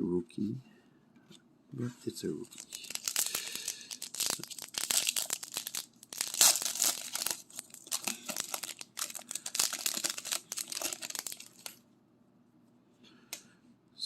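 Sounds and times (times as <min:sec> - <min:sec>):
foil wrapper tearing and crinkling: 0:02.4 - 0:11.8.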